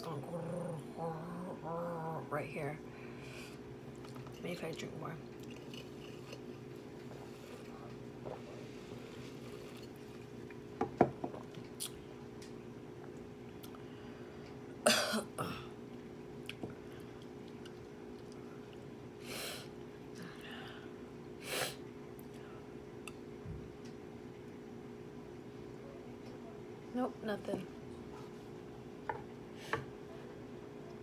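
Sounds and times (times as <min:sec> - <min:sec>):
woman coughing: 0:14.8 - 0:15.8
woman clearing her throat: 0:14.9 - 0:15.8.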